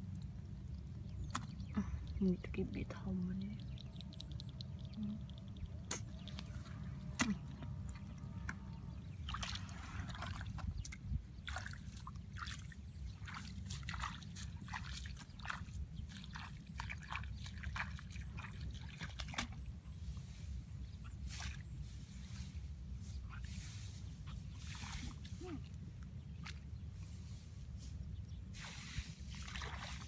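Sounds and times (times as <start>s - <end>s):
steady low rumble: 0.0s - 16.9s
water sloshing and splashing: 3.7s - 30.0s.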